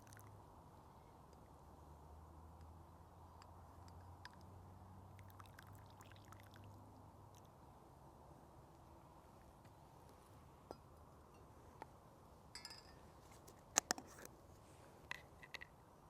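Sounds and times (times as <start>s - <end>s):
faint steady hush: 0.0s - 16.0s
camp mug and cooking kit clinking: 12.6s - 14.3s.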